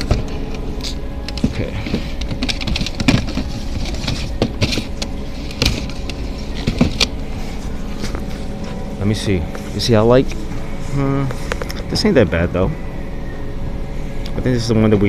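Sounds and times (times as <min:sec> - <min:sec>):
shoes being handled: 0:00.0 - 0:08.8
store background hum: 0:00.0 - 0:15.0.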